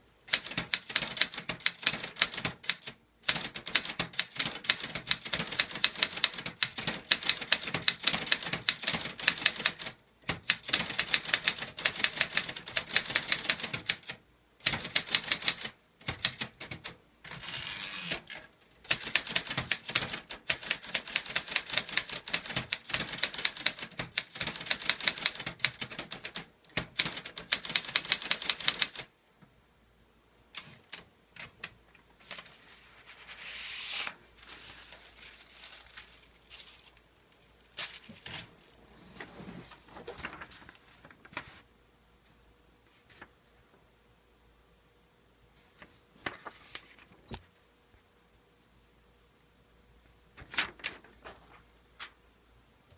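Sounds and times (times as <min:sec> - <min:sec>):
typewriter keystroke clacks: 0:00.3 - 0:17.0, 0:18.1 - 0:29.1.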